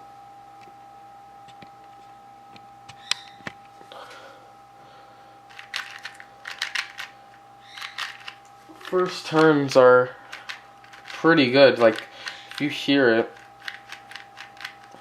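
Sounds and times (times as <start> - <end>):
faint steady hum: 0.0 - 15.0
puzzle cube clicking turns: 5.5 - 9.5, 10.3 - 12.7, 13.3 - 15.0.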